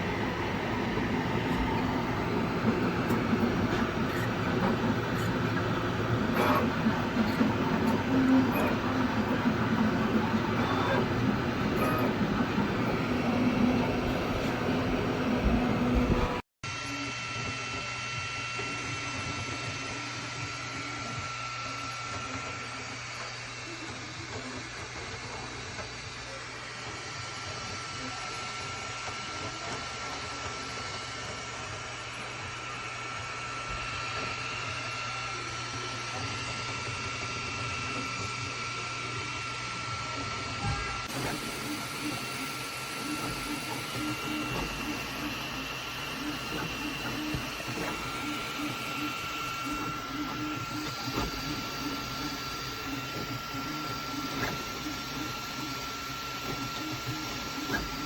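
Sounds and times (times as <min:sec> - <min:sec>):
constant high tone: 0:00.0 - 0:16.4
hum of fans and motors: 0:00.0 - 0:58.0
printer mechanical whir: 0:00.0 - 0:58.0.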